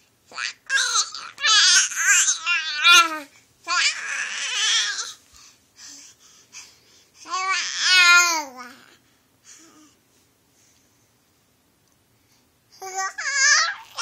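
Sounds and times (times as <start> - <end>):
baby babbling: 0.3 - 5.2, 7.2 - 9.0, 12.8 - 14.0.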